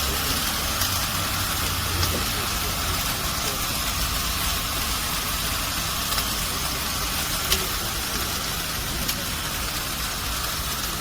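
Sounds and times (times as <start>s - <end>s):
mechanical running noise: 0.0s - 11.0s.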